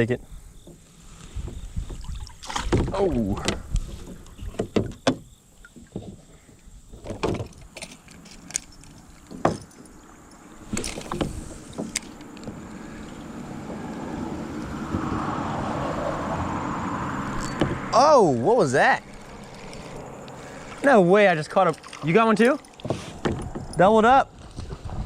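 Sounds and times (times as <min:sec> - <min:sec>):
gear knocking against kayak: 0:01.4 - 0:12.9, 0:21.6 - 0:25.0.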